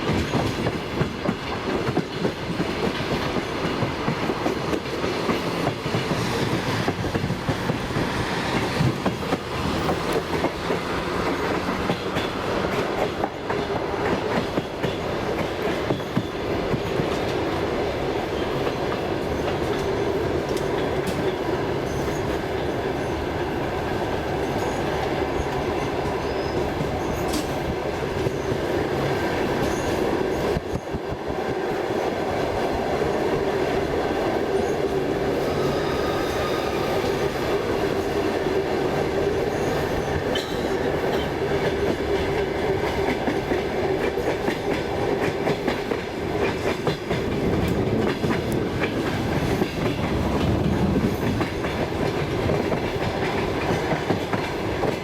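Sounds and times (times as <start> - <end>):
train wheels clattering over rail joints: 0.0 - 17.5, 39.0 - 55.0
train rumble: 0.0 - 55.0.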